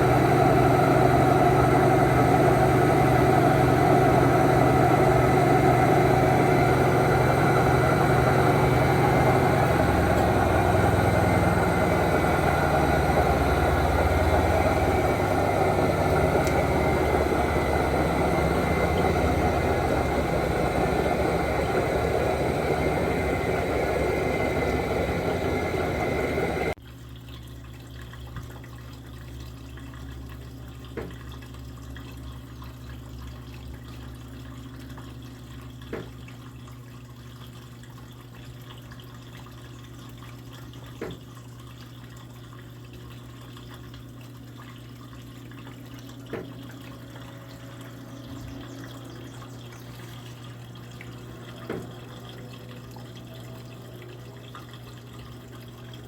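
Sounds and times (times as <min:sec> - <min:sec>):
rushing water: 0:00.0 - 0:26.8, 0:45.4 - 0:56.0
washing machine running: 0:00.0 - 0:26.8, 0:28.0 - 0:56.0
low steady hum: 0:00.0 - 0:56.0.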